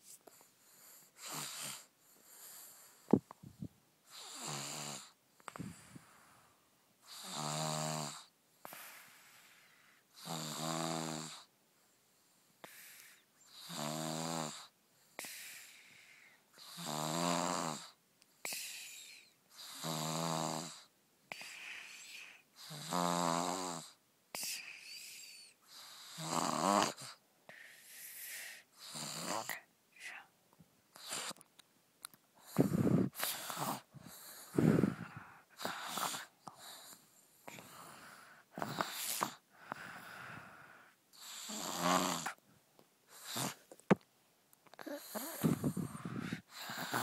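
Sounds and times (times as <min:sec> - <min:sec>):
man snoring: 0:01.2 - 0:01.9, 0:04.1 - 0:05.2, 0:07.1 - 0:08.3, 0:10.2 - 0:11.5, 0:13.5 - 0:14.7, 0:16.6 - 0:18.0, 0:19.6 - 0:20.9, 0:22.6 - 0:24.0, 0:25.8 - 0:27.2, 0:28.8 - 0:29.6, 0:37.5 - 0:42.4, 0:43.2 - 0:43.6, 0:44.8 - 0:47.0
soft breathing: 0:05.4 - 0:06.8, 0:08.6 - 0:10.2, 0:15.0 - 0:16.6, 0:27.4 - 0:28.8, 0:32.4 - 0:41.3, 0:44.8 - 0:47.0.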